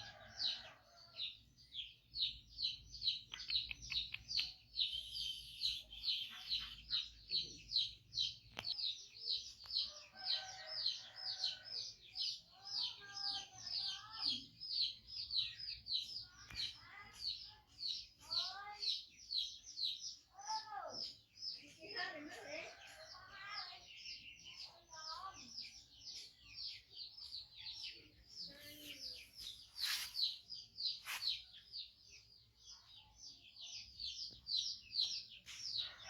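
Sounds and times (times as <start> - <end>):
bird chirping rapidly: 2.3 - 10.0, 28.4 - 32.0.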